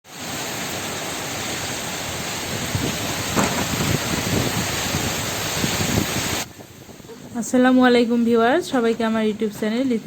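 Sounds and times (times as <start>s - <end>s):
heavy rain pouring: 0.0s - 10.0s
wind: 0.0s - 10.0s
low thumps: 2.8s - 4.6s.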